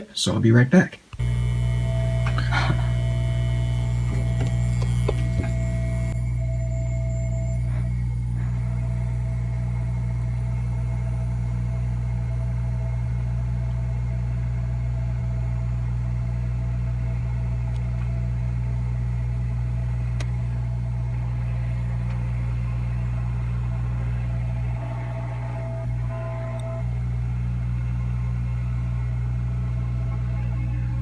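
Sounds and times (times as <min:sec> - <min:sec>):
hot air station blowing: 0:01.2 - 0:13.4.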